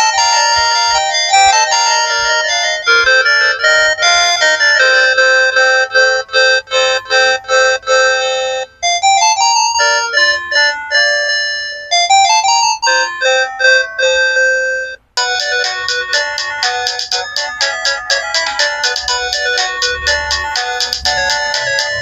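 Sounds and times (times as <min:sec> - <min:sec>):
polyphonic phone ringtones: 0:00.0 - 0:22.0.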